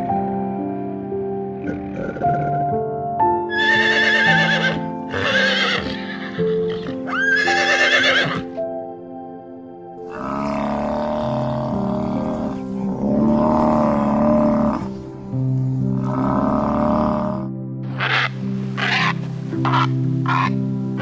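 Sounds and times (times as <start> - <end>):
background music: 0.0 - 21.0
horse whinnying: 3.5 - 8.5, 10.0 - 15.1, 15.9 - 18.3.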